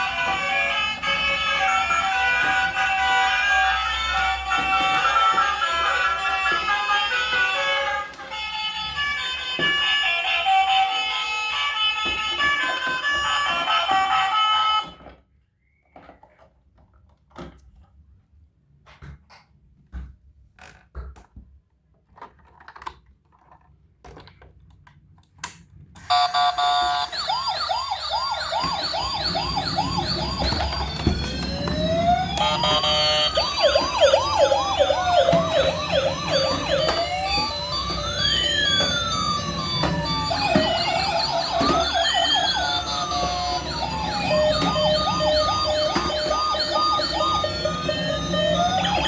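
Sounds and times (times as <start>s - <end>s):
toy electronic sirens: 0.0s - 15.1s, 26.0s - 49.0s.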